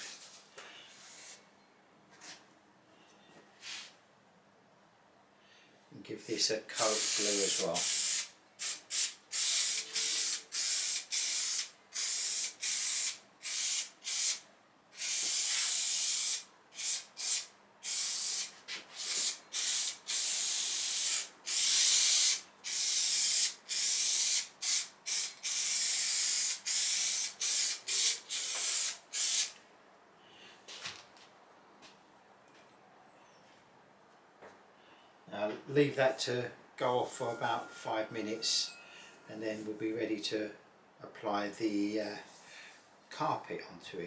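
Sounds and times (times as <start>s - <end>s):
aerosol spray can hissing: 6.8s - 14.4s, 15.0s - 29.6s.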